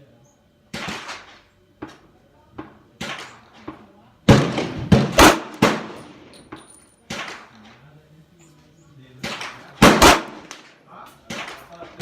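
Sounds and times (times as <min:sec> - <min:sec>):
pistol shots: 0:00.7 - 0:02.0, 0:03.0 - 0:06.5, 0:07.1 - 0:07.6, 0:09.2 - 0:11.7.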